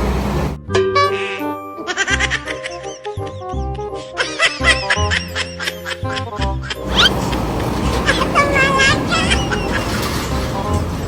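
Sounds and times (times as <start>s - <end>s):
background music: 0.0s - 11.0s.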